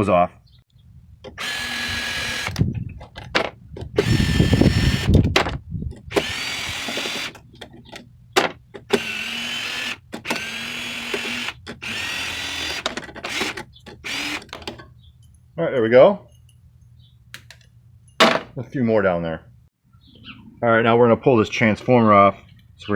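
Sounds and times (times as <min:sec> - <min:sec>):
cordless drill driver bursts: 0:01.3 - 0:02.6, 0:04.0 - 0:05.1, 0:06.1 - 0:07.4, 0:08.9 - 0:14.5.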